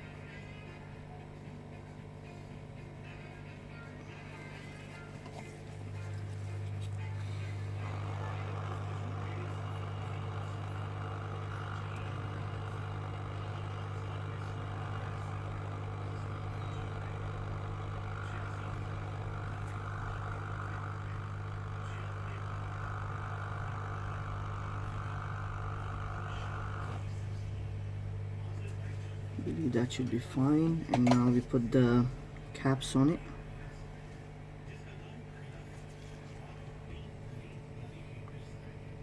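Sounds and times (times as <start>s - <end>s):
steady low hum: 0.0s - 39.0s
hot air station blowing: 5.2s - 33.3s.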